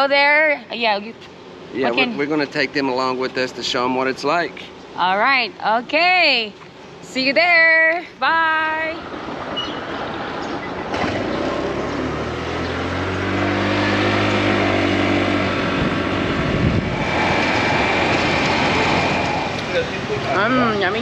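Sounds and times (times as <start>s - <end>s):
road noise: 0.0s - 21.0s
vehicle engine running: 8.4s - 21.0s.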